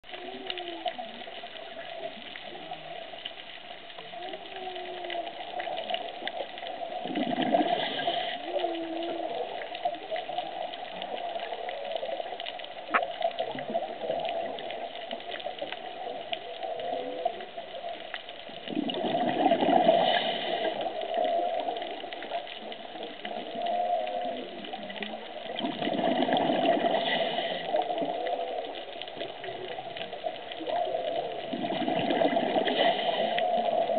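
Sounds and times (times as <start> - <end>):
crackle in water: 0.0 - 33.9
whale calls: 4.0 - 18.1
regulator bubbles rushing: 5.7 - 33.9.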